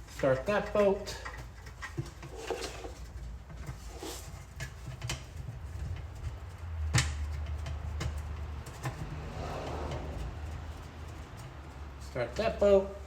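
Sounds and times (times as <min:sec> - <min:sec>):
low rumble: 0:09.0 - 0:11.4.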